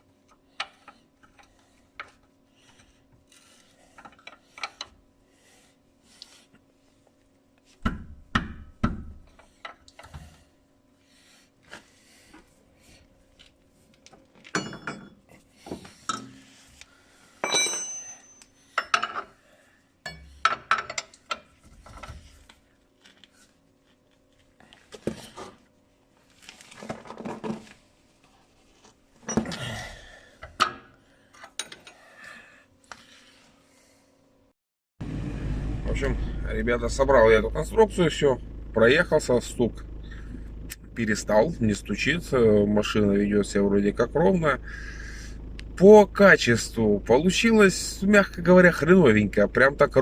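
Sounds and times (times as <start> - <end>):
faint steady hum: 0.0 - 50.0
metal tools clanking on steel: 14.4 - 15.2, 17.4 - 19.3, 31.4 - 32.0.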